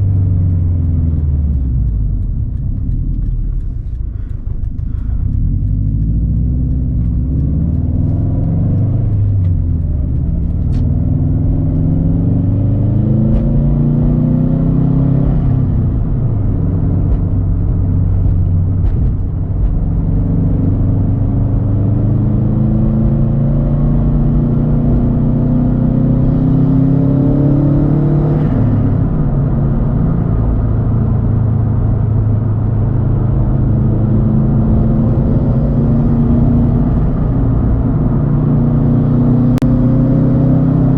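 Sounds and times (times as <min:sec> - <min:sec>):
car engine accelerating through gears: 0:00.0 - 0:40.9.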